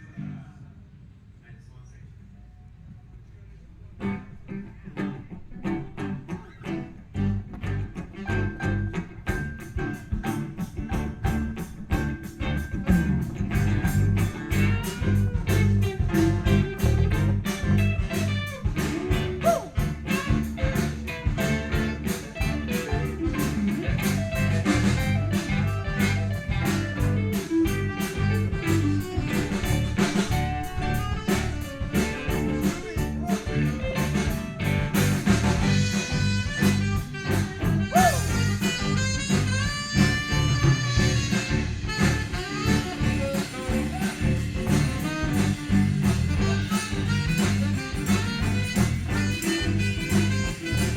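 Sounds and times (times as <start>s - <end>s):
bass guitar: 0.0s - 0.6s, 3.8s - 50.9s
electric guitar: 4.0s - 50.9s
drum kit beat: 7.2s - 50.9s.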